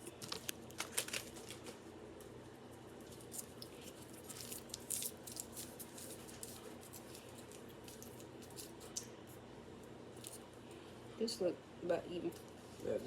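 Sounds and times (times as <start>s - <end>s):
crinkling of sticky wrapper: 0.0s - 1.8s, 3.0s - 9.2s
low steady hum: 0.0s - 13.0s.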